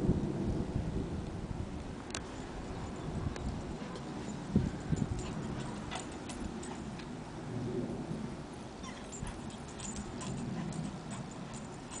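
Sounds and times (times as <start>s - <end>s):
dog whimpering: 8.8s - 12.0s.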